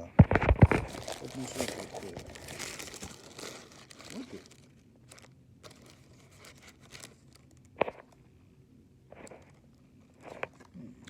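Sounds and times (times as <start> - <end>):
paper wrapper rustling: 0.2 - 8.2.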